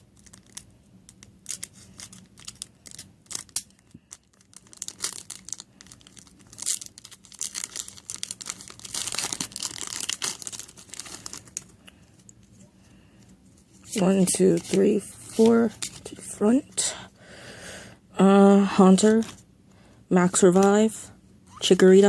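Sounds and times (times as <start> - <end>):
foil wrapper crinkling and tearing: 0.0 - 12.3, 13.8 - 16.4.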